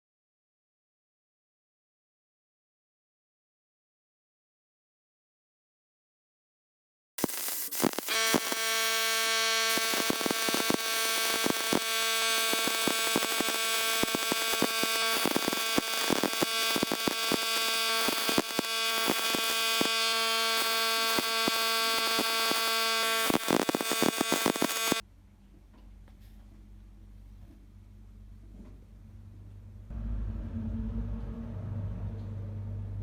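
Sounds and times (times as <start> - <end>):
electric power tool whine: 7.2 - 25.0
rapid scratchy clicks: 7.2 - 25.0.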